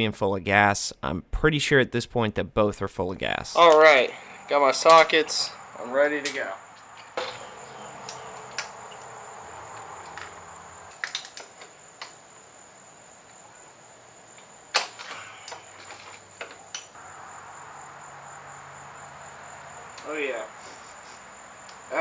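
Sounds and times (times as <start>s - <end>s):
crickets chirping: 3.3s - 22.0s
socket tools clinking: 6.2s - 9.1s, 10.1s - 12.2s, 14.4s - 17.0s.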